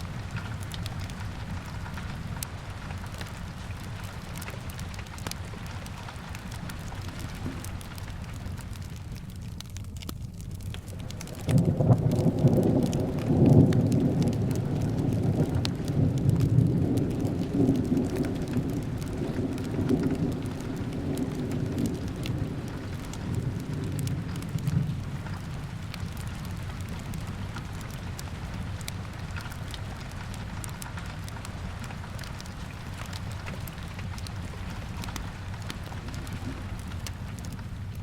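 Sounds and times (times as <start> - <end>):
steady rain: 0.0 - 38.0
wood fire crackling: 0.0 - 38.0
thunder rumbling: 10.8 - 31.8, 32.4 - 38.0.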